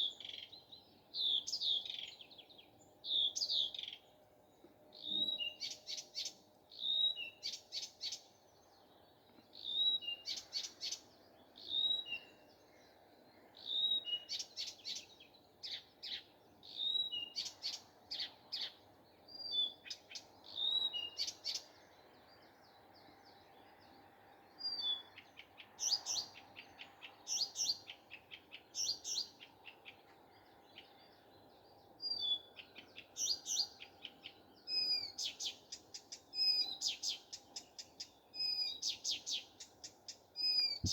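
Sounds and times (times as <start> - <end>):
nightingale singing: 0.0 - 23.9, 24.5 - 40.9.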